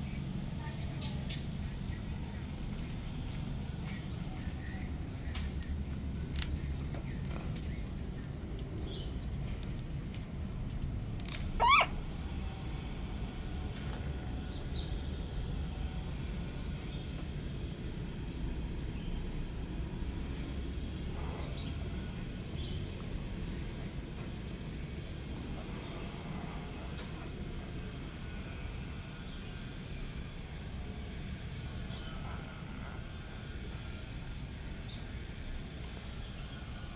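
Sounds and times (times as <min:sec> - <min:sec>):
low outdoor rumble: 0:00.0 - 0:36.9
short high bird chirps: 0:11.6 - 0:12.0.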